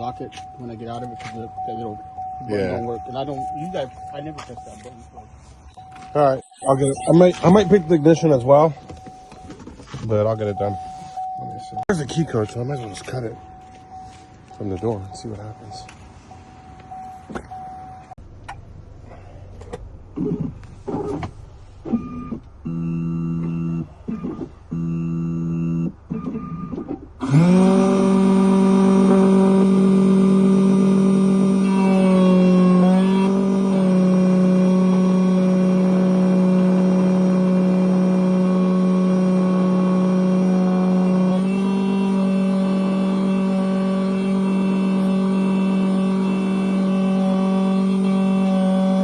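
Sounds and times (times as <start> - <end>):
key-cutting machine motor whine: 27.2 - 49.0.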